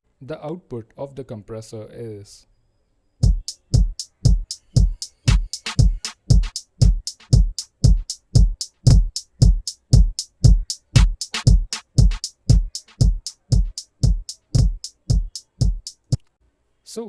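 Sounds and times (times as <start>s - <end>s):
deep kick drum: 3.2s - 16.2s
crisp hi-hat ticks: 3.2s - 16.3s.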